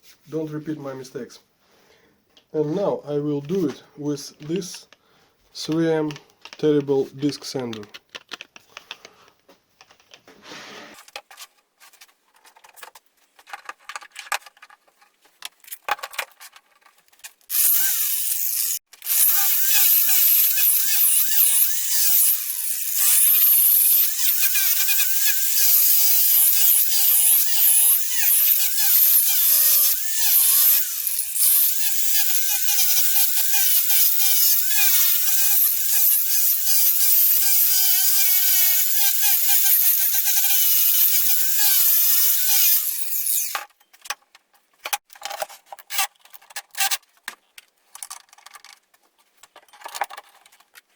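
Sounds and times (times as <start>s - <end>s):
handling clicks: 5.7s - 10.2s
disc sander whining: 17.5s - 43.6s.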